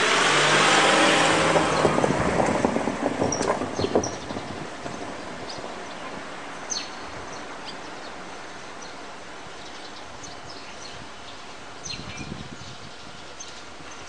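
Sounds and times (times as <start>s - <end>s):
outdoor background hiss: 4.5s - 14.0s.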